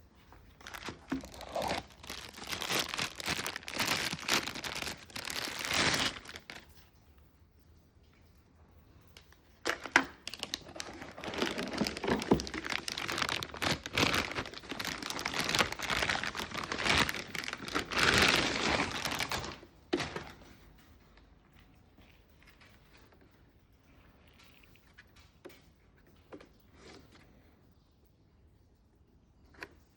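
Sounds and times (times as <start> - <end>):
packaging crinkling and rustling: 0.4 - 6.8, 9.2 - 20.6.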